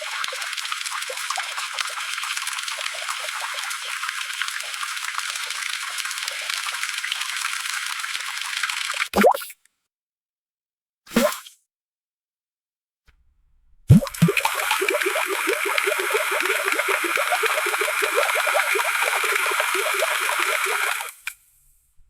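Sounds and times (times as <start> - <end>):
pump hissing with gurgling bubbles: 0.0 - 9.4, 13.9 - 21.3.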